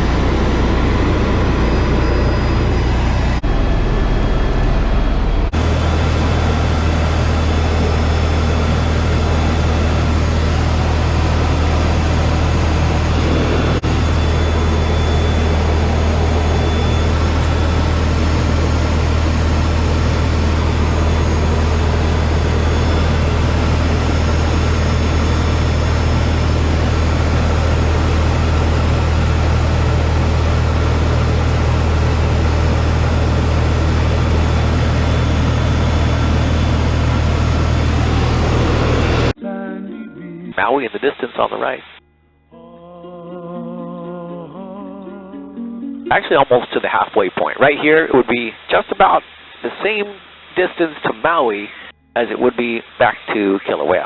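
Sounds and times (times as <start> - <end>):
helicopter rotor and engine drone: 0.0 - 39.4
thin steady whine: 0.0 - 42.5, 43.4 - 54.0.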